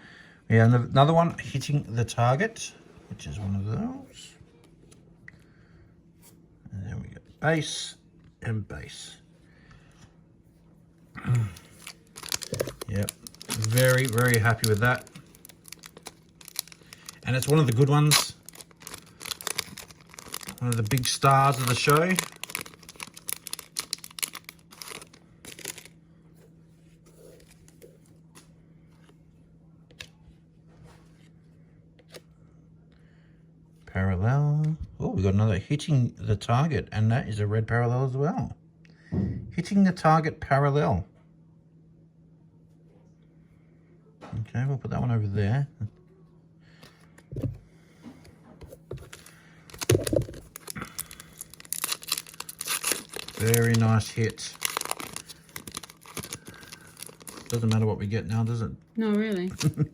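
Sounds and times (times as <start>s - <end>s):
faint steady hum: 0.0s - 59.9s
foil wrapper crinkling and tearing: 11.2s - 26.0s, 49.1s - 59.9s
cards and plastic packaging rustling: 11.2s - 29.2s, 48.6s - 59.9s.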